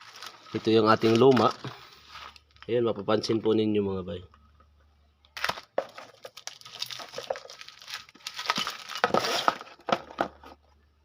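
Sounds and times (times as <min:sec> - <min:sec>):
rustling: 0:00.0 - 0:02.7, 0:05.4 - 0:10.6.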